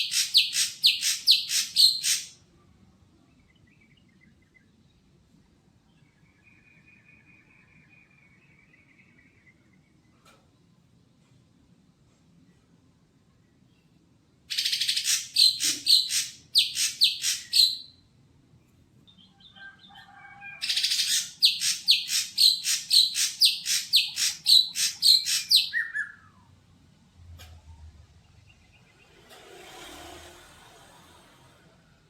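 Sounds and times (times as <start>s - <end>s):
bird calling harsh repeated notes: 0.0s - 2.4s, 14.5s - 18.0s, 20.6s - 26.4s.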